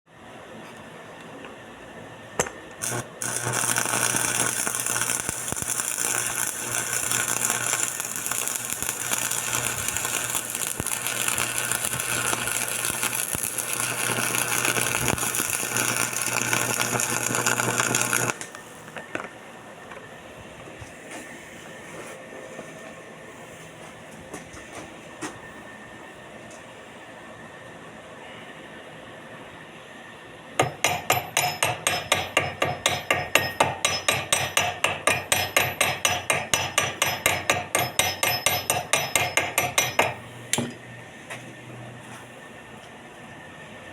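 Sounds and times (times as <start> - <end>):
low electrical hum: 0.1 - 43.9
welding arc crackling and sizzling: 2.7 - 19.3.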